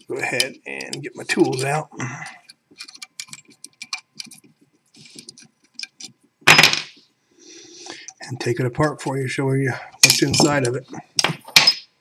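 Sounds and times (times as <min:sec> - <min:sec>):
metal hand tools clinking: 0:10.0 - 0:11.9
metal tools clattering: 0:10.0 - 0:12.0.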